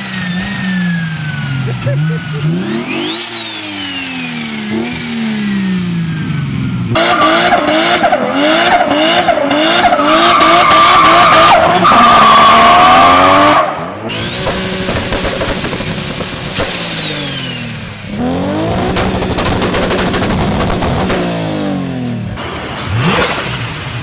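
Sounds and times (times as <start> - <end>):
car engines revving: 0.0 - 24.0.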